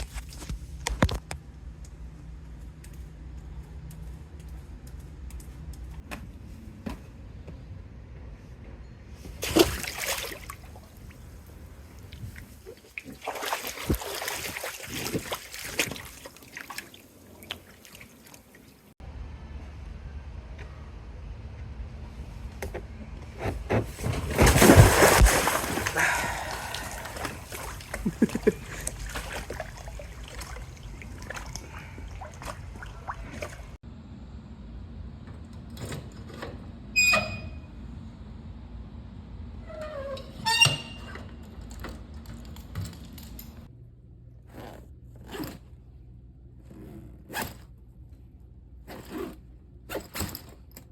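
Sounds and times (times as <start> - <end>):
water splashing and sloshing: 9.2 - 19.0, 23.5 - 33.8
short falling squeak: 37.0 - 37.7.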